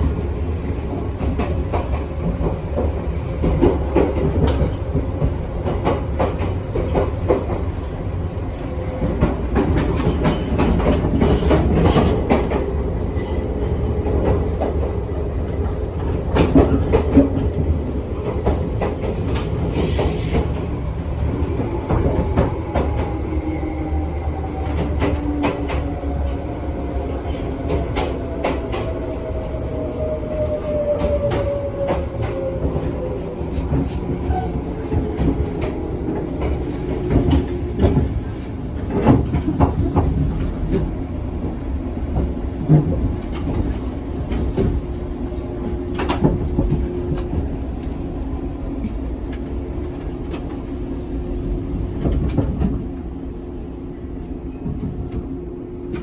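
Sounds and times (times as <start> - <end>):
electric train rumbling: 0.0 - 56.0
clacks over rail joints: 9.0 - 12.8, 33.5 - 44.8.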